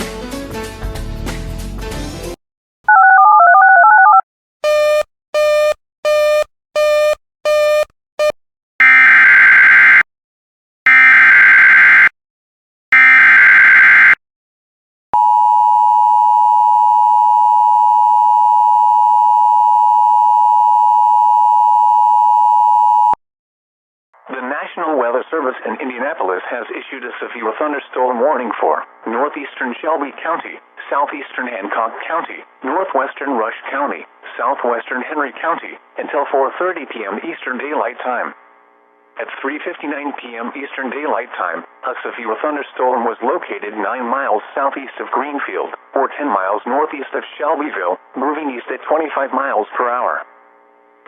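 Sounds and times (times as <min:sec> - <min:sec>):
music: 0:00.0 - 0:02.4
two-tone attention signal: 0:02.9 - 0:08.4
short beeps: 0:15.2 - 0:23.2.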